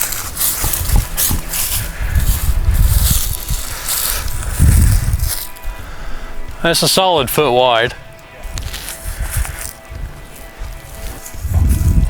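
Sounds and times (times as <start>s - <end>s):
dry leaves rustling and crunching: 0.0s - 5.8s, 8.3s - 12.0s
wind buffeting microphone: 0.0s - 7.3s, 8.0s - 12.0s.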